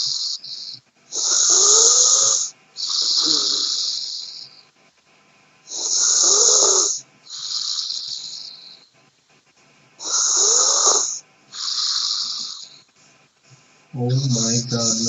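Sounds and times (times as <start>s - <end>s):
person snoring: 0.0s - 4.5s, 5.7s - 8.8s, 10.0s - 12.8s, 14.0s - 15.0s.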